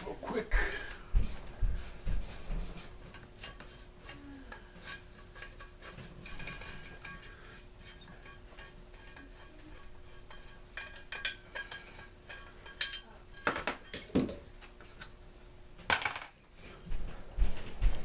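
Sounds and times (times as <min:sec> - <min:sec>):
metal tools clinking: 0:10.3 - 0:14.4.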